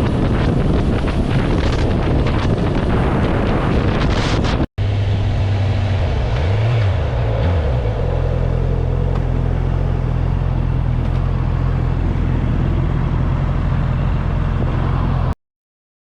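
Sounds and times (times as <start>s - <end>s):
wind rushing past microphone: 0.0s - 11.1s
motorcycle engine running: 0.0s - 15.3s.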